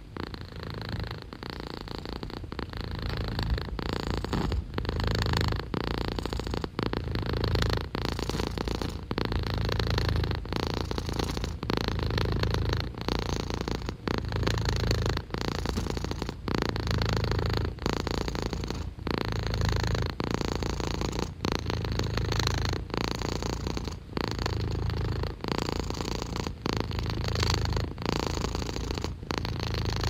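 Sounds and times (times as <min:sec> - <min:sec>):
cat purring: 0:00.0 - 0:30.0.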